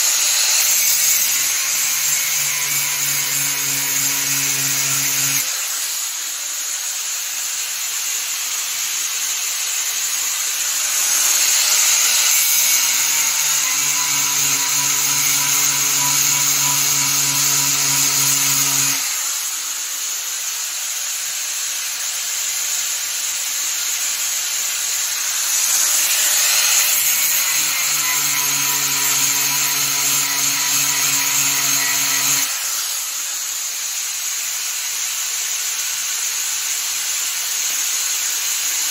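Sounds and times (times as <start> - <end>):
power grinder grinding metal: 0.0 - 7.6, 9.5 - 20.8, 24.0 - 35.6
steady hiss: 0.0 - 38.9.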